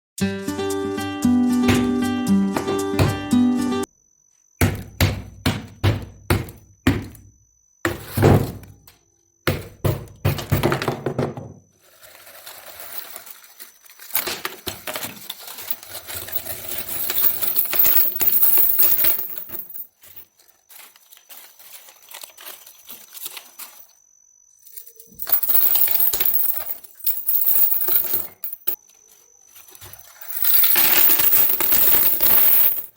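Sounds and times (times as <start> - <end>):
sharp knocks on money bank: 4.6 - 7.2
coins rattling and clinking: 11.9 - 23.9, 24.6 - 28.8, 29.8 - 32.9.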